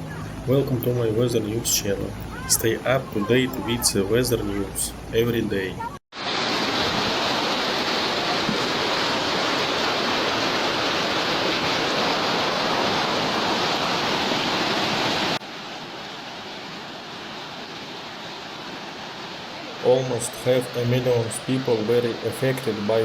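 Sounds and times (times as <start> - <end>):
rushing water: 0.0 - 23.0.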